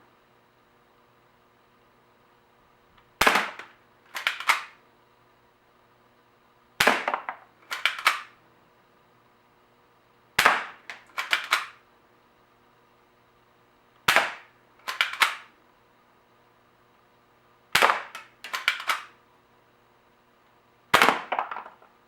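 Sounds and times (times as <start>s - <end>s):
air pistol shot snap: 3.2s - 4.8s, 6.8s - 8.3s, 10.4s - 11.8s, 14.0s - 15.5s, 17.8s - 19.1s, 20.9s - 21.4s
quick run of small clicks: 3.5s - 4.8s, 7.6s - 8.4s, 10.9s - 11.8s, 14.1s - 15.5s, 18.1s - 19.1s.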